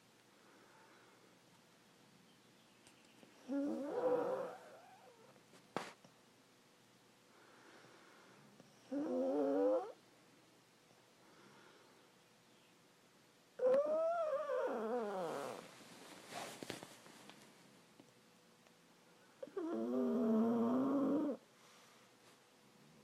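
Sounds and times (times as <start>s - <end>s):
soft breathy sound: 0.3s - 1.5s, 7.2s - 9.0s, 11.1s - 12.8s, 21.2s - 23.0s
small dog snoring: 3.4s - 5.4s, 8.8s - 10.0s, 13.6s - 15.7s, 19.4s - 21.4s.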